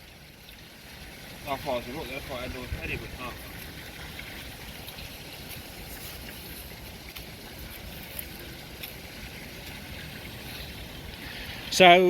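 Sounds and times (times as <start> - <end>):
wind buffeting microphone: 1.5 - 5.2.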